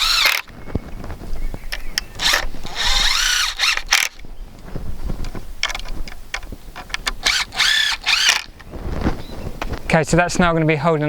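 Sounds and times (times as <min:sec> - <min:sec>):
cordless drill motor whine: 0:00.0 - 0:00.7, 0:02.1 - 0:04.2, 0:07.2 - 0:08.5.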